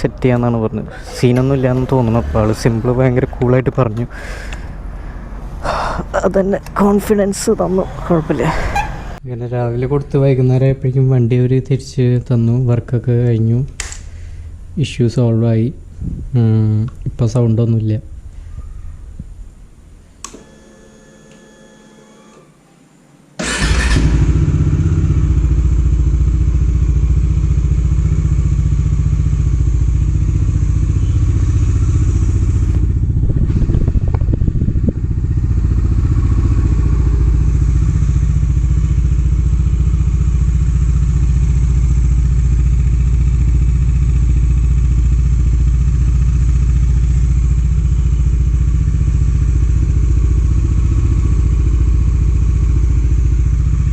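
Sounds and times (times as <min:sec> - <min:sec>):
motorcycle engine starting and idling: 0:00.0 - 0:09.2, 0:23.4 - 0:53.9.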